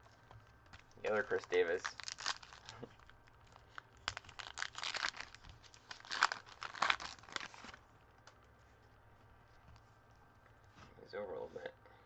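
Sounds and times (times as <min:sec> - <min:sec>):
foil wrapper crinkling and tearing: 0:00.7 - 0:07.8.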